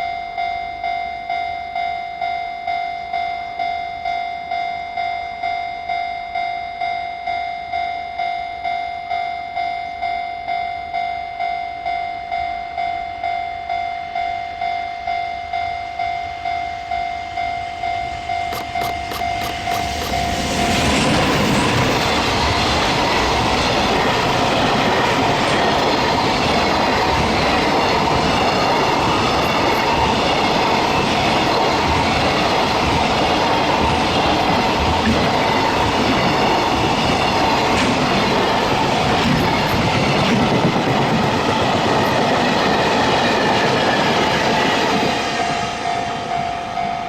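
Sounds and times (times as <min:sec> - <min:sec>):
crossing warning bell ringing: 0:00.0 - 0:47.0
freight train rumbling on rails: 0:09.6 - 0:47.0
train wheel squeal: 0:15.6 - 0:47.0.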